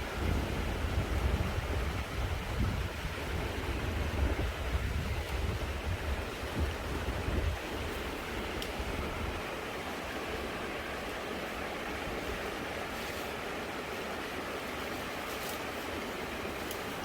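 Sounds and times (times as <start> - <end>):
wind on microphone: 0.0 - 9.5
creek flowing: 0.0 - 17.0.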